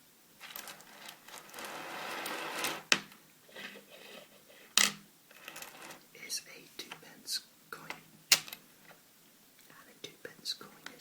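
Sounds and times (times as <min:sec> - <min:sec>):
coins rustling: 0:00.4 - 0:03.0, 0:04.8 - 0:06.0
coin clicks: 0:04.8 - 0:06.0.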